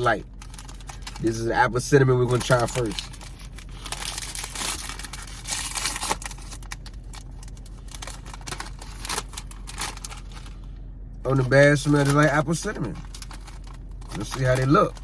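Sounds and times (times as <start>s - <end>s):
bag crackling: 0.0s - 1.4s, 2.2s - 10.6s, 11.4s - 15.0s
snack bag tearing and rustling: 2.3s - 10.6s.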